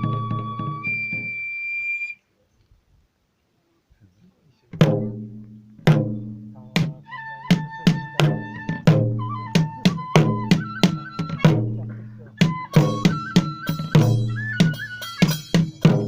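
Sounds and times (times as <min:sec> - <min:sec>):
drum strikes: 0:00.0 - 0:01.3, 0:04.8 - 0:16.0
flute: 0:00.0 - 0:02.2, 0:06.8 - 0:16.0.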